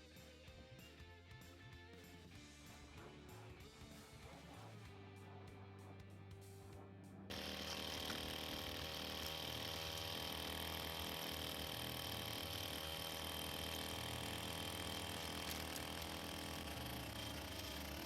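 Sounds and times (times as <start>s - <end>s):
brush cutter engine whining: 7.3s - 18.0s.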